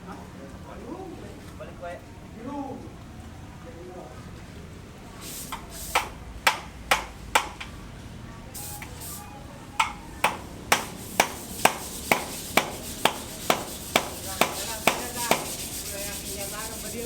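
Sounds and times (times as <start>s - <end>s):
hammer blows ringing: 5.5s - 7.8s, 9.7s - 15.9s.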